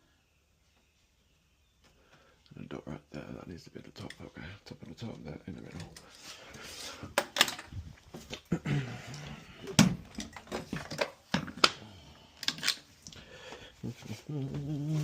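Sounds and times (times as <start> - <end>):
hand tools and lock clicking: 7.2 - 7.7, 12.4 - 12.9.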